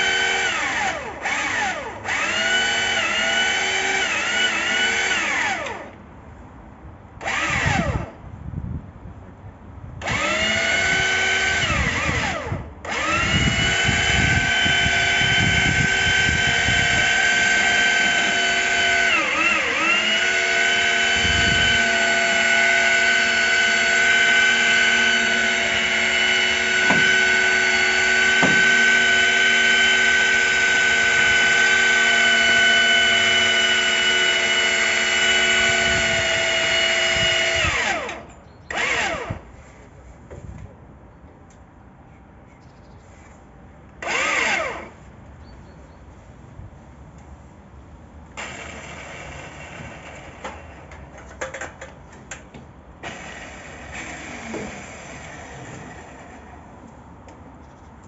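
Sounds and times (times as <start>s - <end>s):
lift motor running: 10.0s - 39.3s.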